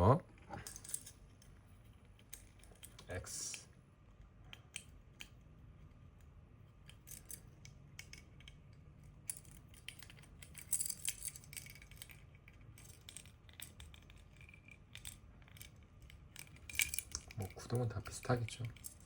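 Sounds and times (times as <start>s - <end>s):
plastic figure clicks and rattles: 9.3s - 19.0s.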